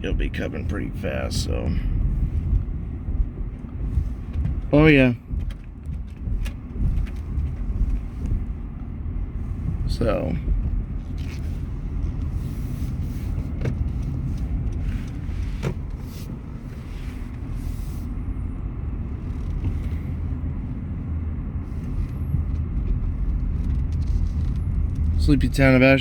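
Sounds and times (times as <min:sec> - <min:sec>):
car road and engine rumble: 0:00.0 - 0:26.0.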